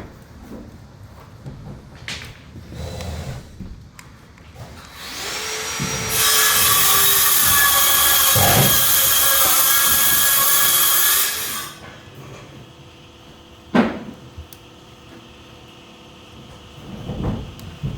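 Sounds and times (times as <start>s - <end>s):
power tool motor whining: 4.9s - 11.8s.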